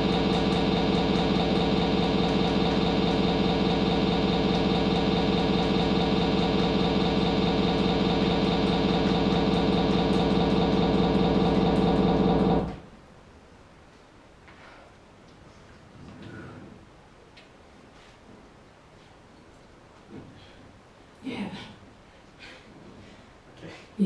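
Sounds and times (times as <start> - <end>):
small engine running: 0.0 - 12.8.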